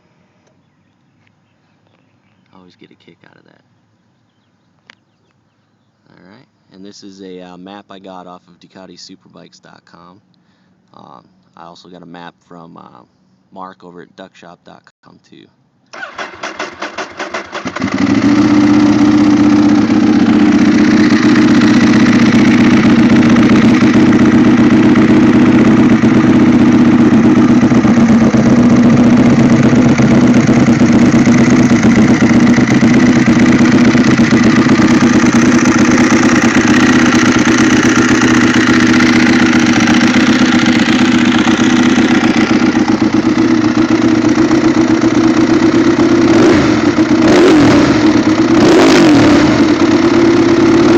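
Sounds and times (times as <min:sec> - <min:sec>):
motorcycle engine starting and idling: 0:15.9 - 0:50.9.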